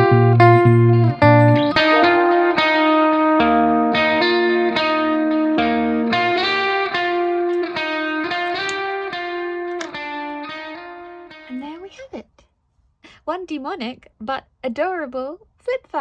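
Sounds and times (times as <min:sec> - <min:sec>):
plucked guitar melody: 0:00.0 - 0:11.6.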